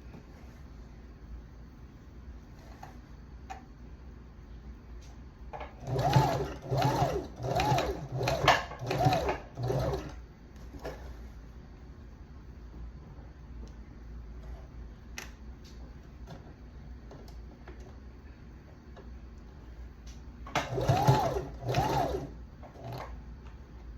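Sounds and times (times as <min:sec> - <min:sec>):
sewing machine stitching: 0:05.8 - 0:10.2, 0:20.6 - 0:23.2.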